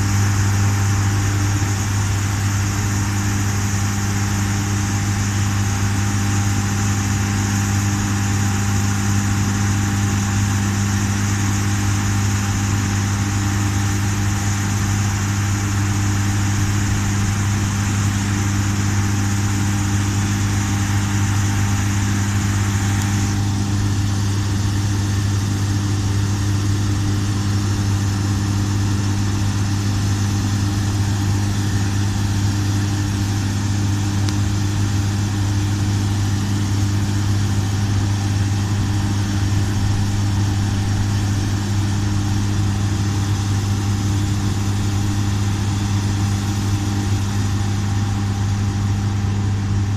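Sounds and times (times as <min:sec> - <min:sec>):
diesel engine hum: 0:00.0 - 0:49.9.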